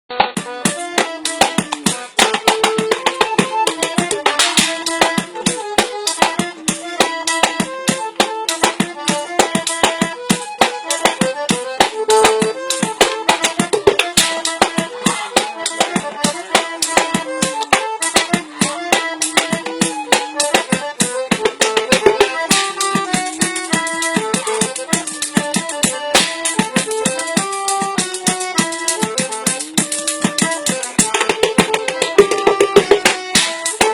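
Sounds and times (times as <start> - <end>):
music with held melody: 0.1 - 33.9
fast drumming on tin cans: 27.4 - 33.9.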